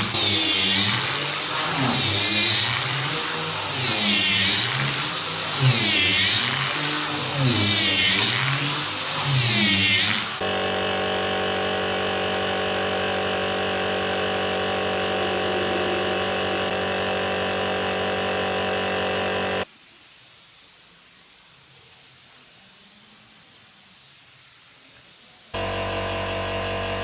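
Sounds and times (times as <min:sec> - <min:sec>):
power tool motor running: 0:00.0 - 0:19.6, 0:25.6 - 0:27.0.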